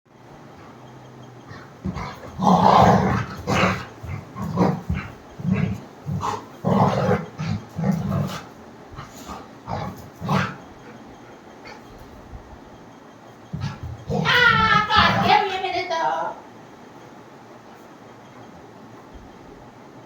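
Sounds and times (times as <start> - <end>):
dog growling and barking: 1.4 - 12.2, 13.5 - 15.6.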